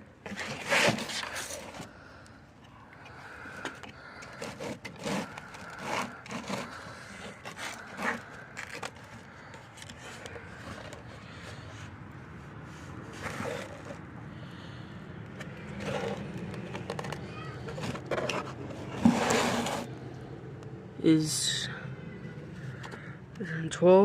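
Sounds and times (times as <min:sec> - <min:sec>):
fish scraping on measuring device: 0:04.4 - 0:08.9, 0:19.0 - 0:19.9.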